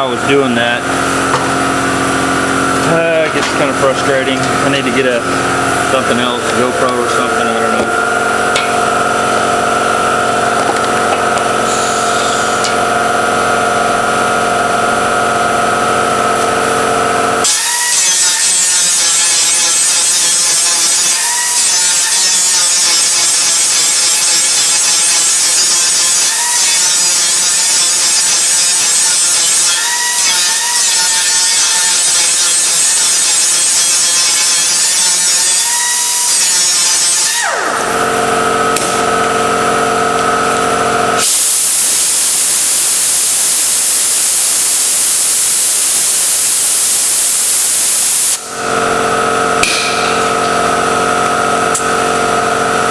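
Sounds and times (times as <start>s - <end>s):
steady machine hum: 0.0s - 52.9s
angle grinder grinding metal: 10.4s - 13.2s, 17.4s - 52.9s.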